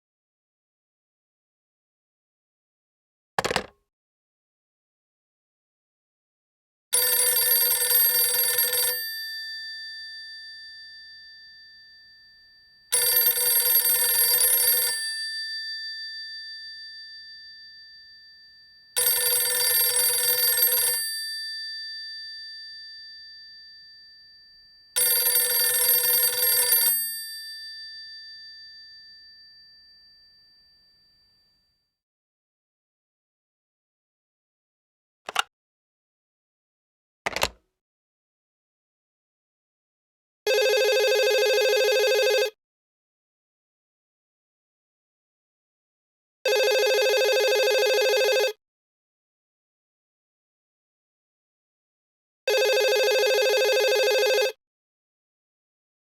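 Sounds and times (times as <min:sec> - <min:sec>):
telephone bell ringing: 0:07.0 - 0:31.1, 0:40.5 - 0:42.6, 0:46.5 - 0:48.6, 0:52.5 - 0:54.6.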